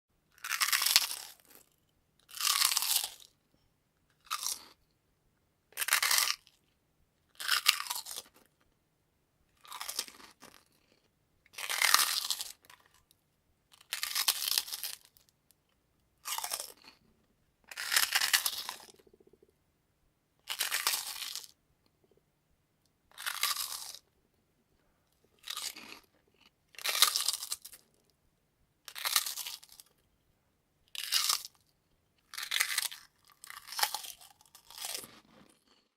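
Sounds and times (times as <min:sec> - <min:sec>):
potato chips crunching: 0:00.3 - 0:03.4, 0:04.2 - 0:04.8, 0:05.8 - 0:06.6, 0:07.3 - 0:08.5, 0:09.6 - 0:10.7, 0:11.5 - 0:13.0, 0:13.7 - 0:15.3, 0:16.2 - 0:17.0, 0:17.7 - 0:19.1, 0:20.4 - 0:21.6, 0:23.1 - 0:24.1, 0:25.3 - 0:28.0, 0:28.9 - 0:30.0, 0:30.9 - 0:35.9.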